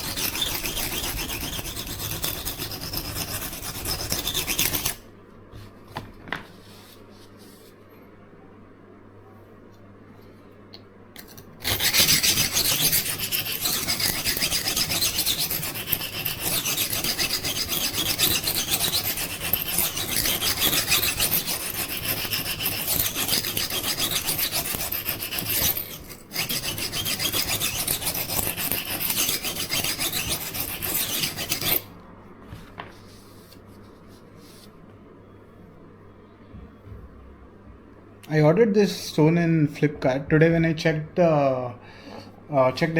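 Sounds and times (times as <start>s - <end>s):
knife scraping on sharpening stone: 0.0s - 5.0s, 11.2s - 31.8s.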